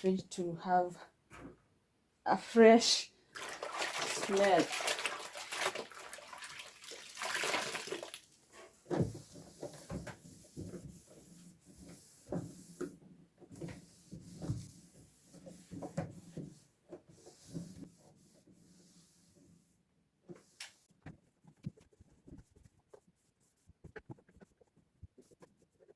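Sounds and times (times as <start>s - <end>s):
cleaning solution splashing: 3.3s - 8.3s.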